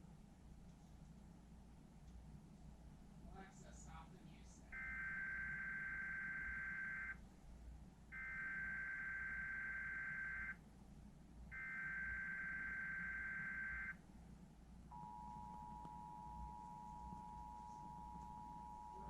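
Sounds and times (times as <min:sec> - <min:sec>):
two-tone attention signal: 0:11.6 - 0:13.9.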